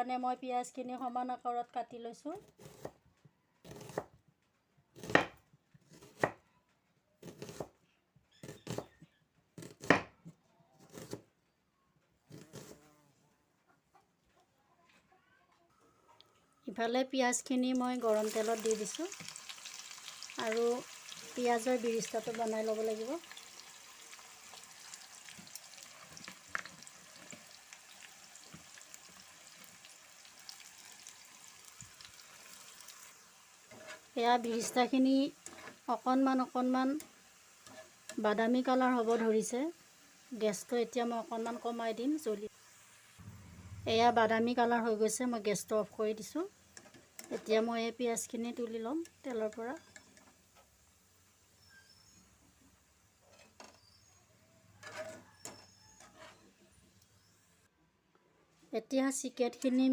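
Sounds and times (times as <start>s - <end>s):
knife cutting onions on board: 3.6s - 4.2s, 5.0s - 6.4s, 7.2s - 7.8s, 8.4s - 9.0s, 9.6s - 10.2s, 10.8s - 11.3s, 12.3s - 12.8s
onions sizzling in hot oil: 17.4s - 43.2s, 43.9s - 54.1s.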